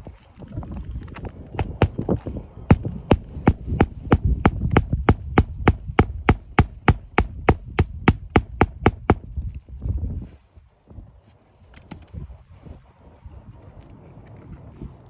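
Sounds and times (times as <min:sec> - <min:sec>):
hammer driving nails: 0:01.6 - 0:02.0, 0:02.7 - 0:09.3.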